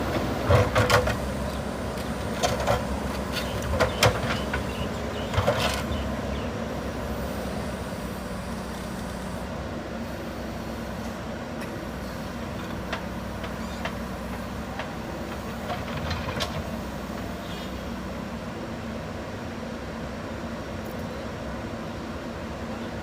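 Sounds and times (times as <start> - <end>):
diesel engine running: 0.0 - 20.7.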